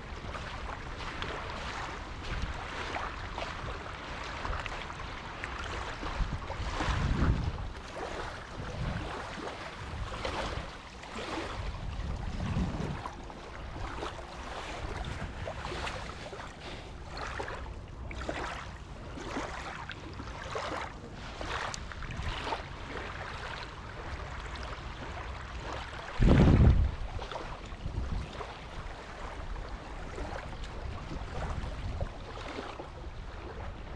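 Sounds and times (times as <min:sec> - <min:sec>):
wind buffeting microphone: 0:04.4 - 0:17.2, 0:26.0 - 0:33.9.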